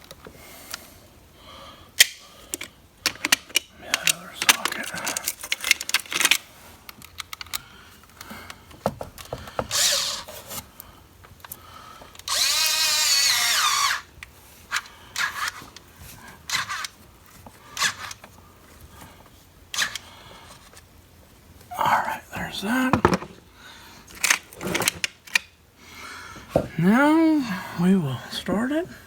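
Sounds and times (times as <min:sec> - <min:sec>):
cordless power tool whining: 0:12.2 - 0:14.1.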